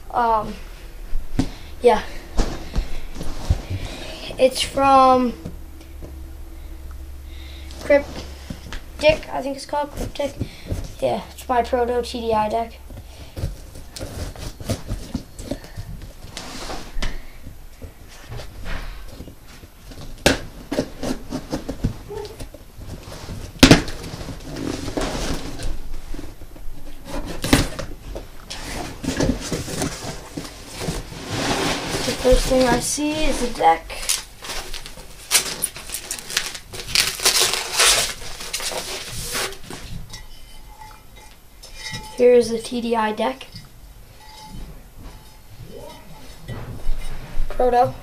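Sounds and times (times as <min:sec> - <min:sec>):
cardboard box rubbing and scraping: 0:28.6 - 0:33.6, 0:36.3 - 0:39.9
packaging crinkling and rustling: 0:33.6 - 0:40.0.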